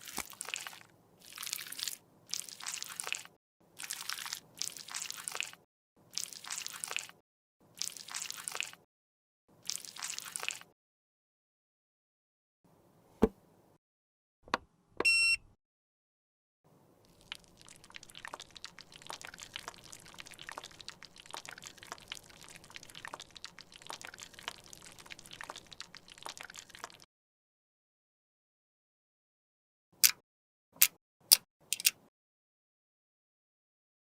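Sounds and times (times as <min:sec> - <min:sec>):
fine crackling and wet scraping: 0:00.0 - 0:05.6, 0:17.0 - 0:27.1
short electronic beep: 0:15.0 - 0:15.4.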